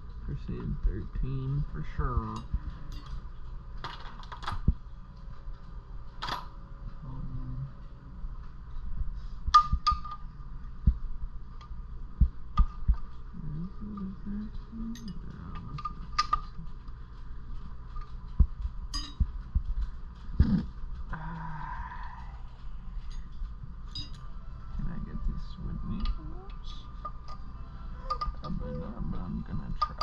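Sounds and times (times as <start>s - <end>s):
faint steady hum: 0.0s - 30.0s
metal tools clinking: 18.9s - 19.2s, 23.0s - 24.3s.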